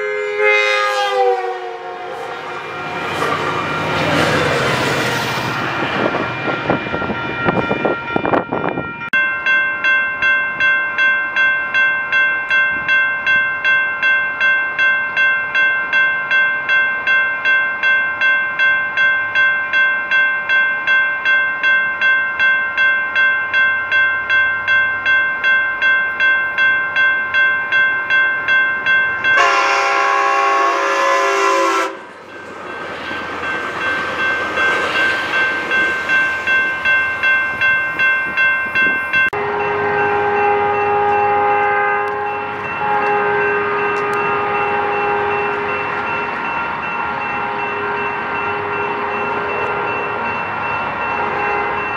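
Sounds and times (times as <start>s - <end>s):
locomotive horn: 0.0s - 3.4s, 29.4s - 32.2s, 39.4s - 45.9s, 51.2s - 51.9s
crossing warning bell ringing: 0.0s - 51.9s
train passing with rushing rumble: 0.0s - 51.9s.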